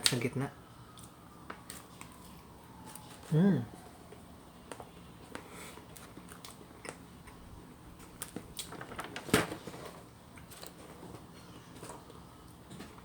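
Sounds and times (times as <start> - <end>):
chewing bread: 4.7 - 8.9.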